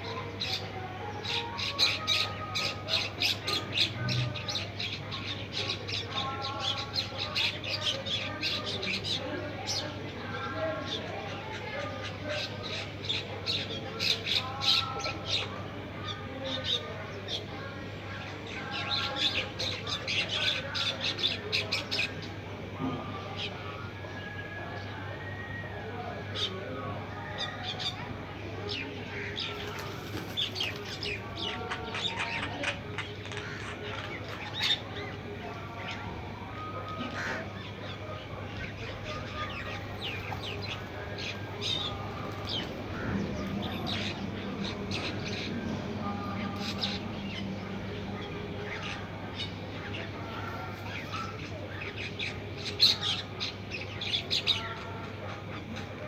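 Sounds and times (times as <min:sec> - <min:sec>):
small birds chirping: 0:27.2 - 0:56.0.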